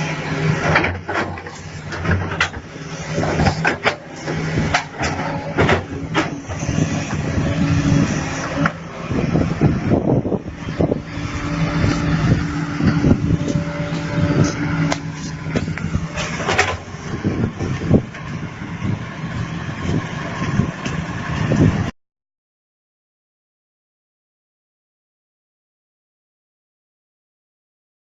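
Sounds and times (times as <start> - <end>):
heavy machine engine running: 0.0 - 21.9.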